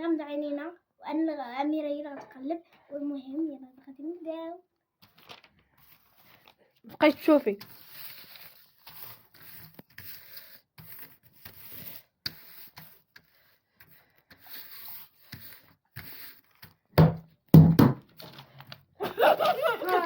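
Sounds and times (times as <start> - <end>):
rustling and scraping of handling: 5.0 - 16.9
sharp knock: 17.0 - 18.0.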